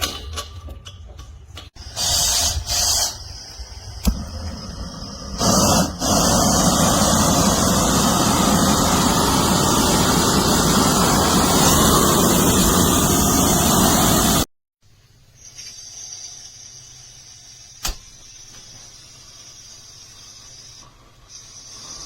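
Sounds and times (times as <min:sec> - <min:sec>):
gas torch flame roaring: 0:01.8 - 0:14.5, 0:19.3 - 0:22.0.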